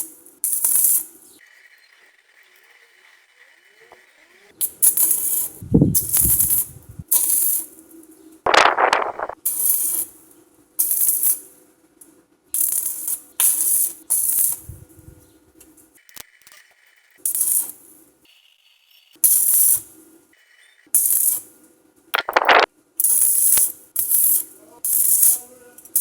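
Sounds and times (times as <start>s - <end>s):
arc welding crackling: 0.0s - 1.1s, 4.6s - 7.7s, 8.5s - 10.1s, 10.8s - 11.4s, 12.6s - 15.1s, 22.2s - 25.4s
steady welder hum: 5.0s - 7.0s.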